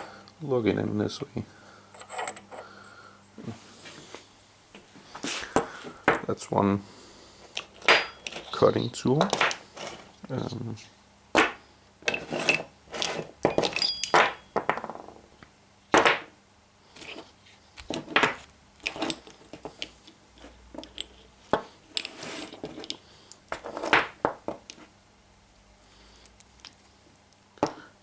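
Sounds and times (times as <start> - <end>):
metal tools clinking and knocking: 1.9 - 2.7, 7.5 - 10.0, 12.1 - 14.9.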